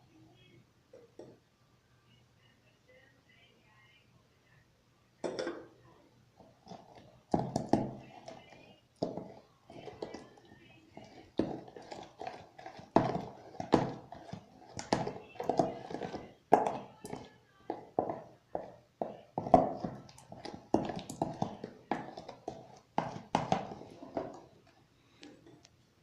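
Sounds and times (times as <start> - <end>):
slime squelching: 6.4 - 25.6.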